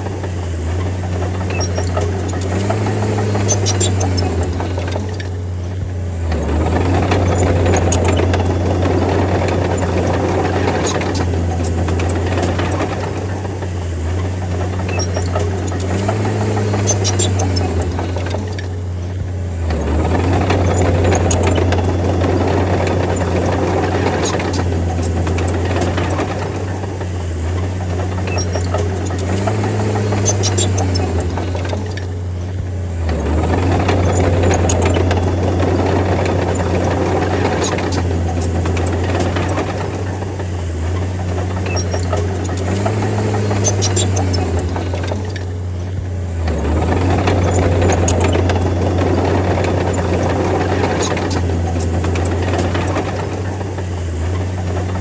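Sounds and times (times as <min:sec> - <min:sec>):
bulldozer diesel engine droning: 0:00.0 - 0:55.0
light metallic clicks and rattles: 0:00.0 - 0:55.0.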